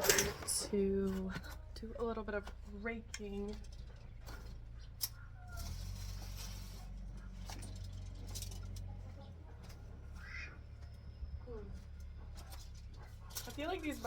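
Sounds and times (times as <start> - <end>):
scraping rustle: 0.0 - 11.0.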